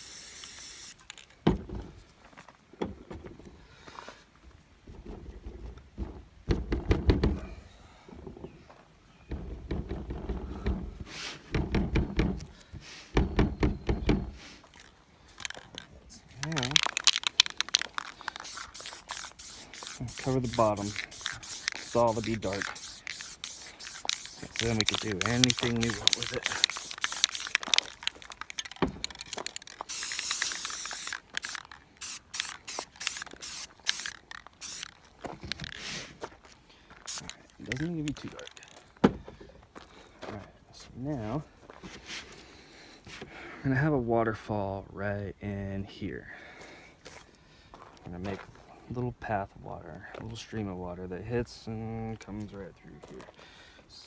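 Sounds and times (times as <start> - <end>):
short hiss: 0.0 - 1.1, 16.7 - 27.8, 29.8 - 34.9, 37.0 - 37.4
spray paint can spraying: 0.0 - 1.1, 16.4 - 35.0, 37.0 - 37.4.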